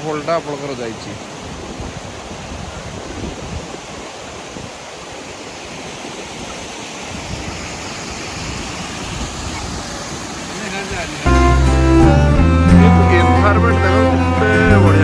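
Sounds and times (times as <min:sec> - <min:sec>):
waterfall rushing: 0:00.0 - 0:15.0
wind on the microphone: 0:01.0 - 0:11.3.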